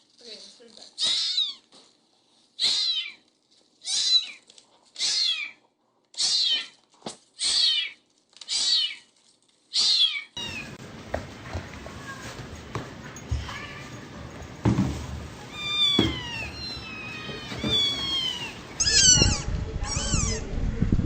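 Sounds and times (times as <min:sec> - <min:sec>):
kitten meowing: 0:02.6 - 0:03.2, 0:03.8 - 0:04.4, 0:05.0 - 0:05.6, 0:06.2 - 0:06.8, 0:07.4 - 0:09.0, 0:09.8 - 0:10.8, 0:15.5 - 0:20.5
faint knocks: 0:10.7 - 0:19.4.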